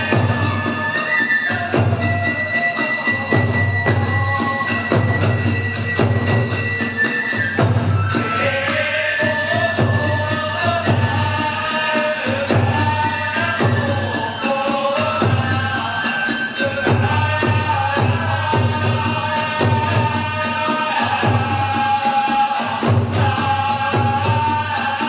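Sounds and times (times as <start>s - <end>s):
taiko drum beating: 0.0s - 0.8s, 3.1s - 8.4s, 22.7s - 24.7s
hand cymbals: 0.0s - 25.0s.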